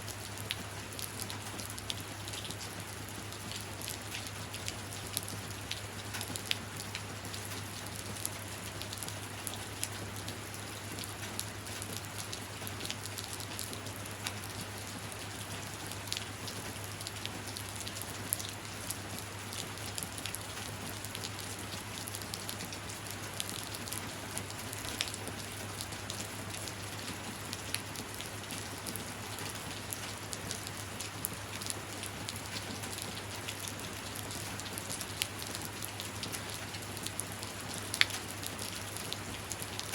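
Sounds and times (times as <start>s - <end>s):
steady rain: 0.0s - 39.9s.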